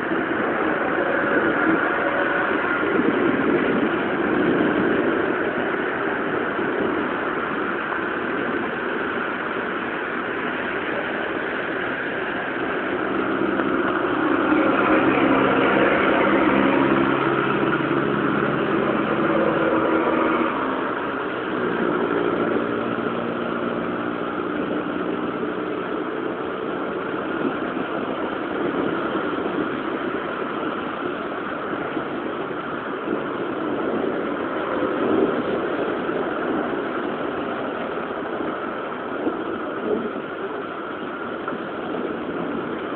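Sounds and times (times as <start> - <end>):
rain hissing: 0.0 - 42.9
vehicle engine running: 0.0 - 42.9.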